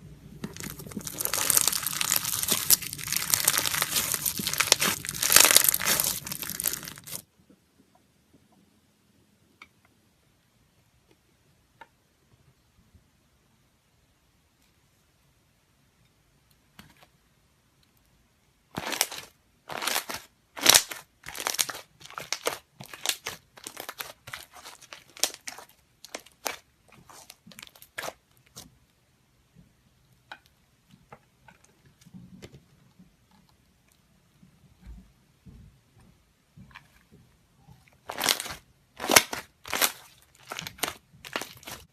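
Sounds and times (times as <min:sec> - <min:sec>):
slime squishing by hand: 0:00.0 - 0:07.2, 0:18.7 - 0:28.9, 0:36.5 - 0:41.9.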